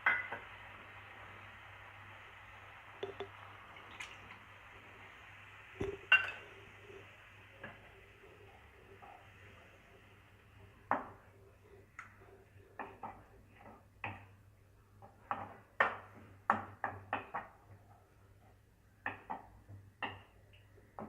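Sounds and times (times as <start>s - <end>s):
utensil knocking against a pan: 3.0s - 3.3s.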